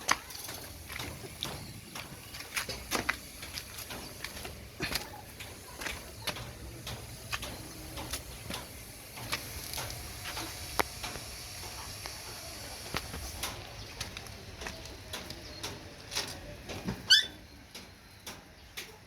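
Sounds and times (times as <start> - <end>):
puppies suckling wet clicks: 0.0 - 16.7
steady hiss: 0.4 - 14.5.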